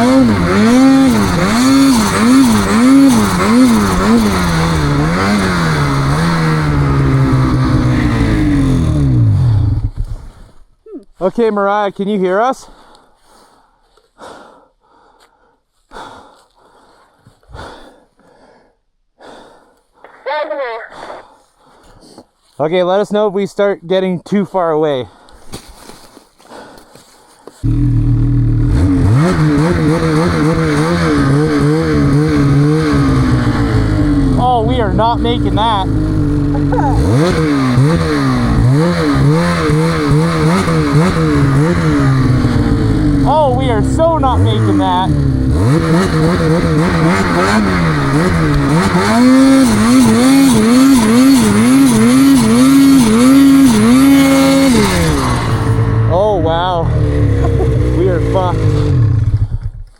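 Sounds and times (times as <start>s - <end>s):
snowmobile engine revving: 0.0s - 10.6s, 27.6s - 59.9s
person breathing hard: 7.8s - 8.8s, 12.6s - 20.2s, 20.9s - 22.4s, 25.0s - 27.6s.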